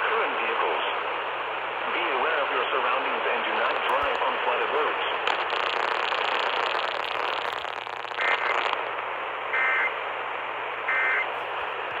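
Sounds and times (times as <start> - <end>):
radio static: 2.0 - 10.0.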